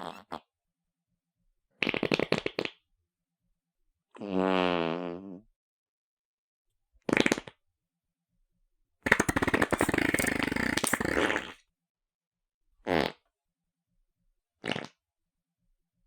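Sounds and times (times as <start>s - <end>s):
fart sounds: 4.2s - 5.4s, 9.1s - 11.6s, 12.9s - 13.2s, 14.6s - 15.0s.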